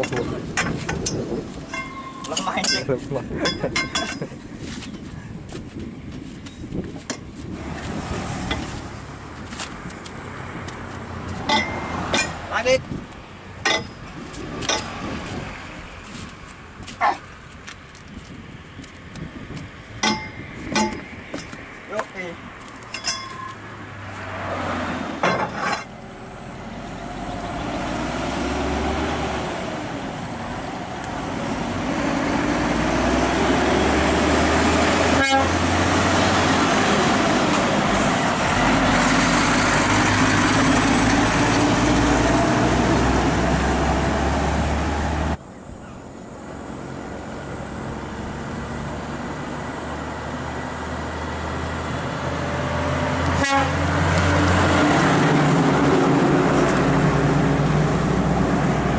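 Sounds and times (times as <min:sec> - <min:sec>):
diesel truck engine under load: 0:00.0 - 0:17.5, 0:18.1 - 0:45.4, 0:46.2 - 0:58.9
quieter engine: 0:18.2 - 0:58.9.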